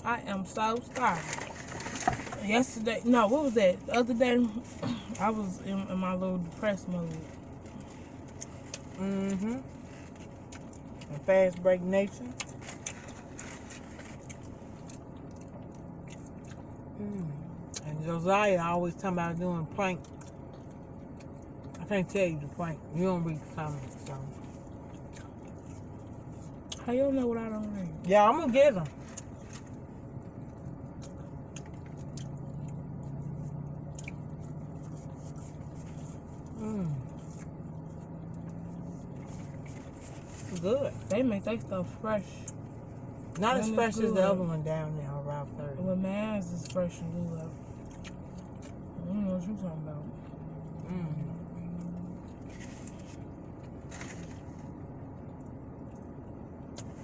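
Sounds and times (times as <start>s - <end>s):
low background rumble: 0.0s - 57.0s
steady low hum: 0.0s - 57.0s
person chewing food: 7.4s - 11.1s, 12.3s - 17.0s, 20.0s - 21.8s, 24.3s - 26.9s, 29.0s - 40.6s
soft rustles: 12.5s - 15.1s, 52.2s - 54.8s.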